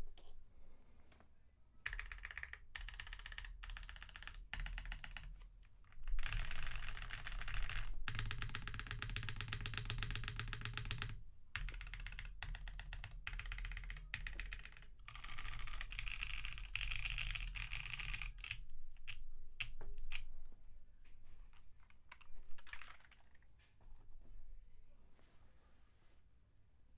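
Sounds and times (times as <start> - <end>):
mechanical keyboard typing: 1.8 - 20.2, 21.9 - 23.4.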